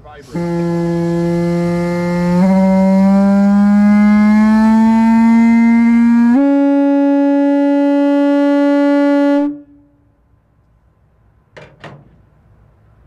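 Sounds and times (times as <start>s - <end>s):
locomotive air horn: 0.2s - 10.1s.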